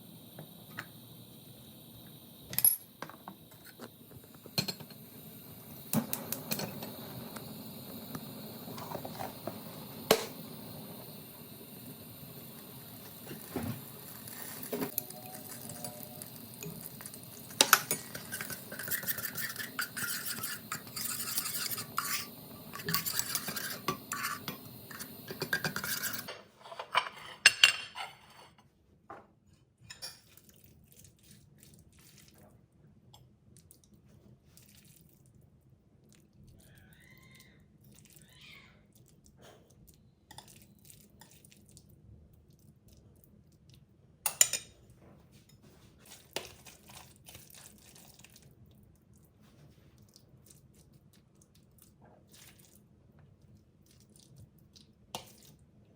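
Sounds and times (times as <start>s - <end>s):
utensils and dishes clattering: 2.5s - 5.1s, 5.8s - 7.2s, 13.2s - 28.6s.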